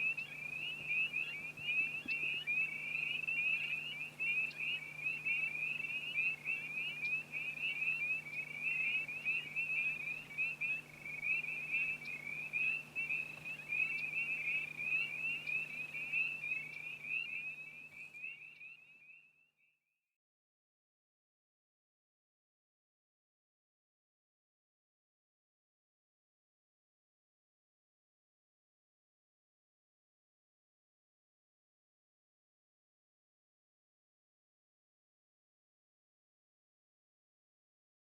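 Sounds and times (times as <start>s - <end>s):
faint low hum: 0.0s - 18.9s
frogs calling: 0.0s - 19.3s.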